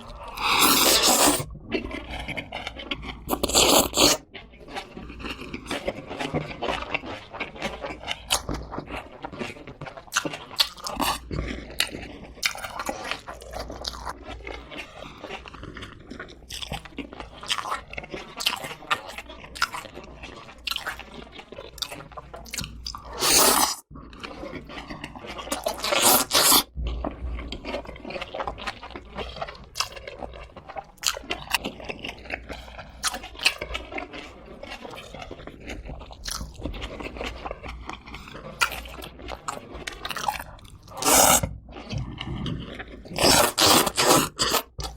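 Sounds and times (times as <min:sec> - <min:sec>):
crunching chewing: 0:00.0 - 0:44.9
wet mouth clicks: 0:00.3 - 0:01.5, 0:03.3 - 0:04.2, 0:40.4 - 0:42.1.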